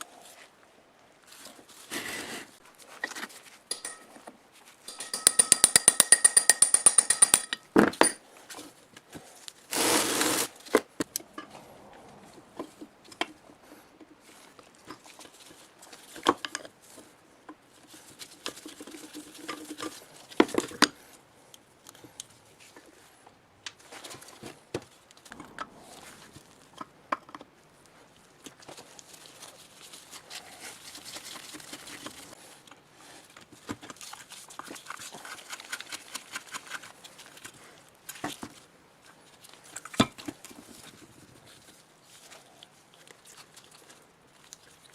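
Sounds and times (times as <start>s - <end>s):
tools knocking on metal: 3.7s - 4.2s, 4.9s - 8.2s.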